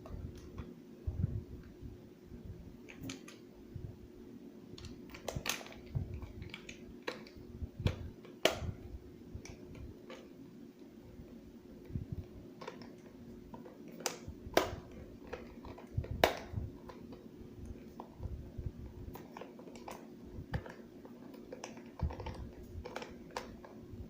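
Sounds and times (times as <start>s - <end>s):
faint steady hum: 0.0s - 24.0s.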